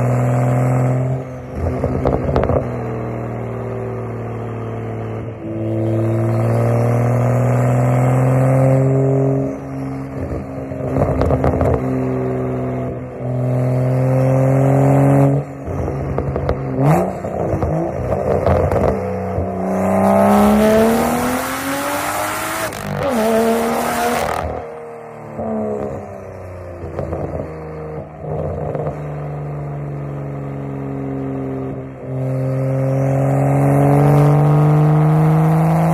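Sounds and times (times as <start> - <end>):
car engine revving: 0.0 - 35.9.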